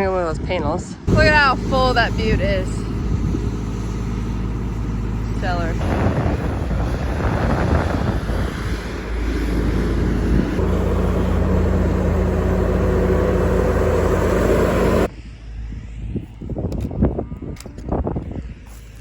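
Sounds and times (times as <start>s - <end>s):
farm vehicle engine running: 1.1s - 15.1s.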